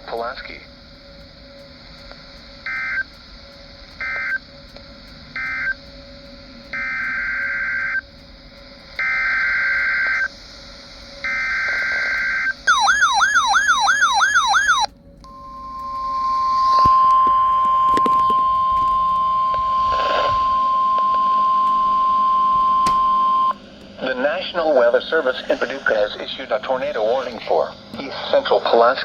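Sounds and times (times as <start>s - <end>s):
screechy digital data bursts: 9.0s - 23.5s
warbling siren-like tone: 11.2s - 27.8s
steady single-pitch alert tone: 11.3s - 23.6s.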